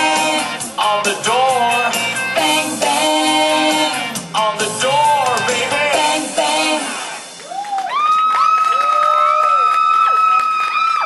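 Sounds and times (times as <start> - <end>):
children cheering and screaming: 7.4 - 11.0.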